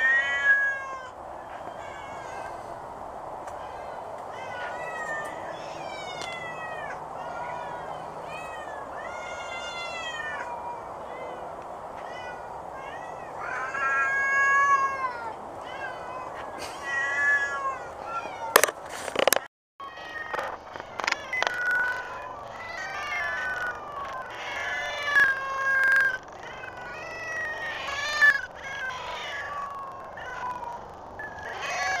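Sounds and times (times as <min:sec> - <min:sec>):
cat meowing: 0:00.0 - 0:02.8, 0:03.4 - 0:18.7, 0:19.8 - 0:32.0
sharp clicks: 0:20.3 - 0:21.8.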